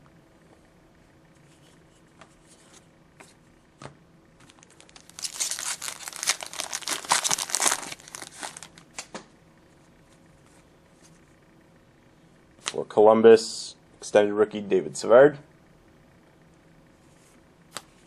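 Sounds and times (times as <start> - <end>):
foil wrapper tearing and crinkling: 4.4 - 9.0.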